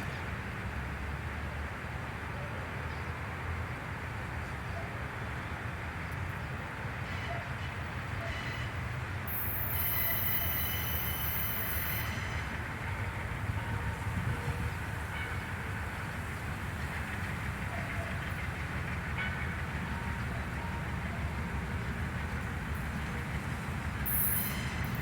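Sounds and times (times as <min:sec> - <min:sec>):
freight train rumbling past: 0:00.0 - 0:25.0
high-pitched squeal: 0:24.1 - 0:25.0.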